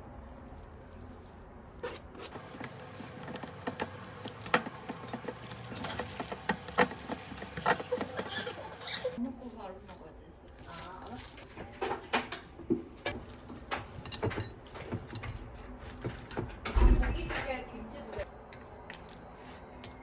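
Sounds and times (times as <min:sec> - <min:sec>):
dishes and utensils clicking: 0:10.8 - 0:17.6.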